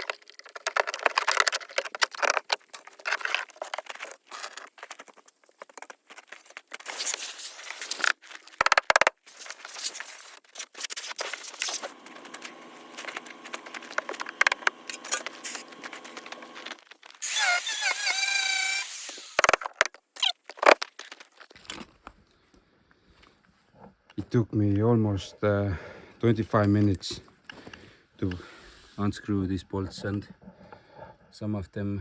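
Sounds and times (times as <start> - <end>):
steady hum: 11.3 - 19.4.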